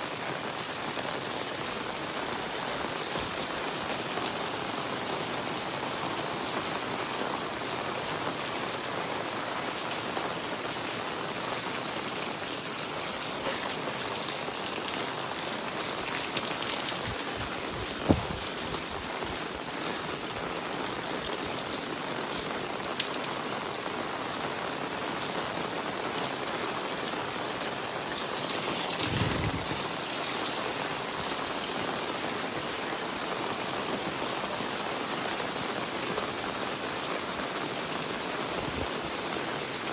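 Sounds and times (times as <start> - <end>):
rain pattering: 0.0 - 39.9
sharp knock: 18.0 - 18.6
low thump: 18.0 - 18.8.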